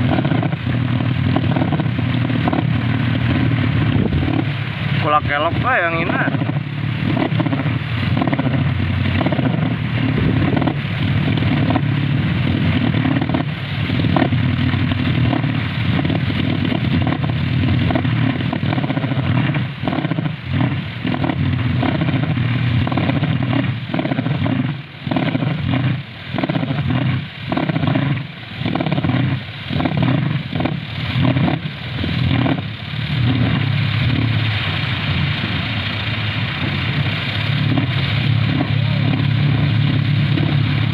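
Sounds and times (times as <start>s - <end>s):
wind propeller whirring drone: 0.0s - 40.9s.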